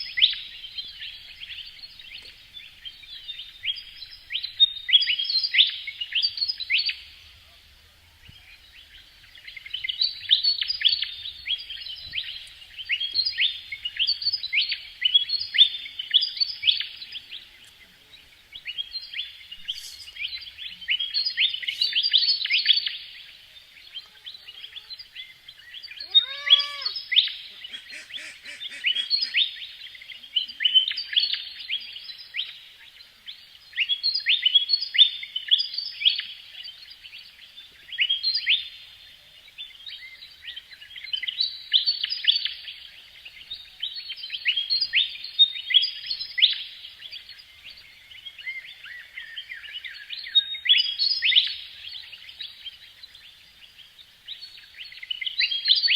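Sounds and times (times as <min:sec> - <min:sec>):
small birds chirping: 0:00.0 - 0:55.9
lower bird call: 0:18.6 - 0:22.9, 0:25.8 - 0:29.6.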